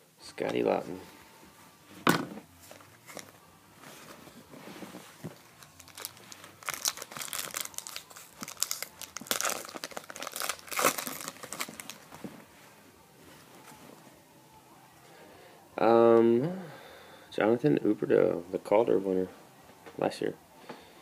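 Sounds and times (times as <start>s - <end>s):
plastic wrapper tearing and crinkling: 5.4s - 12.2s.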